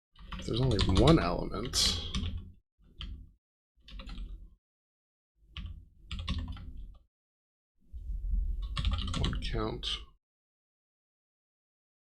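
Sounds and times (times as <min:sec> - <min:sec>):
typing on a keyboard: 0:00.2 - 0:03.2, 0:03.8 - 0:04.4, 0:05.6 - 0:07.0, 0:08.6 - 0:09.5.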